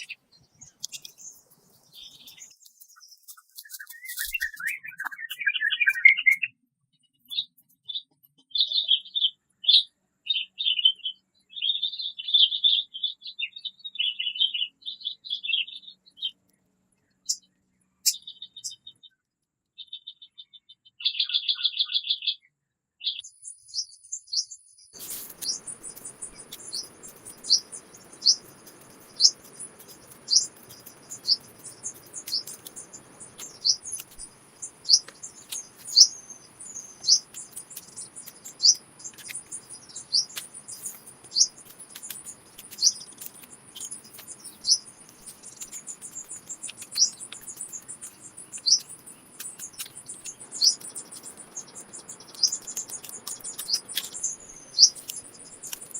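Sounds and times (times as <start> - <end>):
faint outdoor hiss: 0.0 - 4.8, 23.2 - 55.9
songbird chirping: 0.0 - 55.9.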